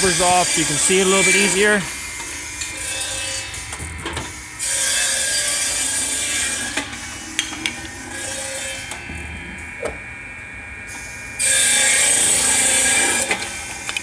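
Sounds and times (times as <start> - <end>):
saw blade cutting hiss: 0.0 - 2.1
wedge saw running: 0.0 - 3.7, 4.3 - 9.2, 10.9 - 13.8.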